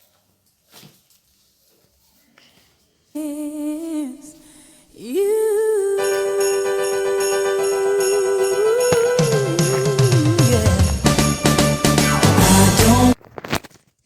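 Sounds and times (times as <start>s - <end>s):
person singing or humming: 3.2s - 11.4s, 12.3s - 13.2s
christmas-style music: 6.0s - 13.2s
sleigh bells ringing in christmas music: 6.0s - 13.2s.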